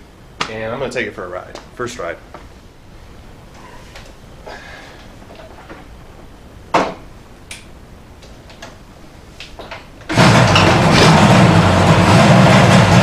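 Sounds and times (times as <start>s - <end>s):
two-stroke engine starting: 10.1s - 13.0s.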